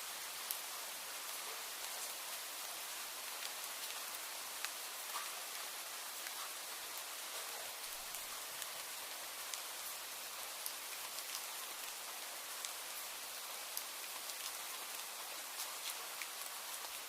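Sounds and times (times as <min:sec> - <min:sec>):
steady rain hiss: 0:00.0 - 0:17.0
raindrops ticking on a surface: 0:00.1 - 0:17.0.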